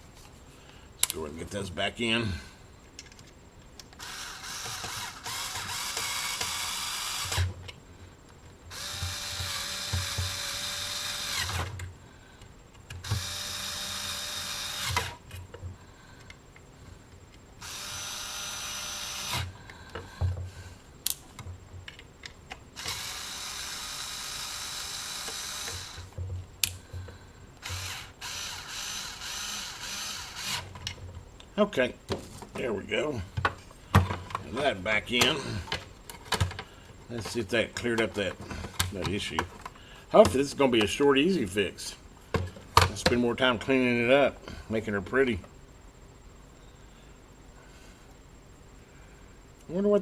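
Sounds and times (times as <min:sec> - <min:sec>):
cordless power screwdriver running: 0:04.0 - 0:07.5, 0:08.7 - 0:11.7, 0:13.0 - 0:15.2, 0:17.6 - 0:19.5, 0:22.8 - 0:26.1, 0:27.6 - 0:30.6
handling knocks and clicks: 0:33.3 - 0:41.0.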